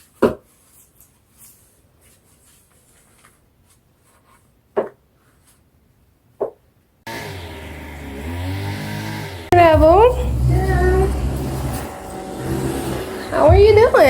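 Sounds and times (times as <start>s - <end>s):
faint rubbing and scraping: 0.0s - 5.7s, 9.5s - 14.0s
steady low drone: 7.1s - 14.0s.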